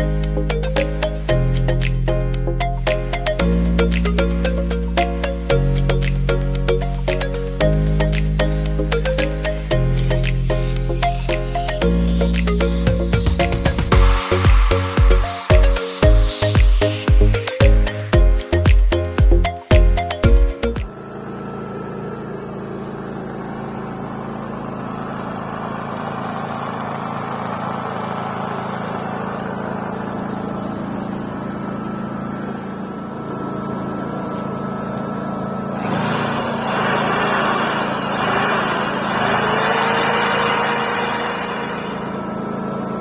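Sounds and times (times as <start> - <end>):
generator engine humming: 0.0 - 43.0
tone rising in pitch: 6.7 - 20.9
loud rushing noise: 13.4 - 16.6, 35.8 - 42.4.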